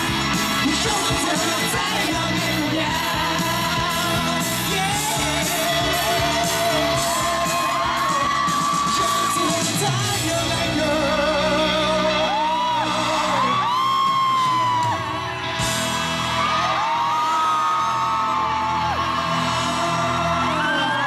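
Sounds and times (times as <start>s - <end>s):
loud singing: 0.0s - 21.0s
rock band playing: 0.0s - 21.0s
high yells and whoops: 6.7s - 9.7s, 12.1s - 21.0s.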